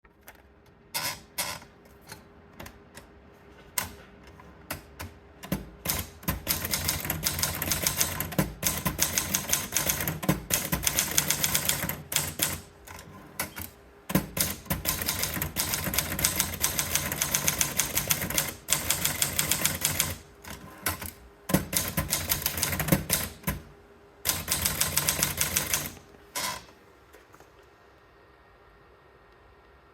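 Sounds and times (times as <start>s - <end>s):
typewriter typing: 4.8s - 26.7s.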